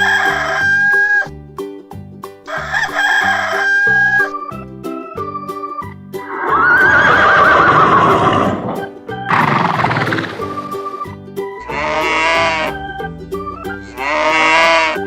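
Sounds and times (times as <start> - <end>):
children's background music: 0.0 - 15.0
horse whinnying: 6.2 - 11.1, 11.7 - 12.8
animal calls: 6.2 - 12.9, 13.6 - 15.0.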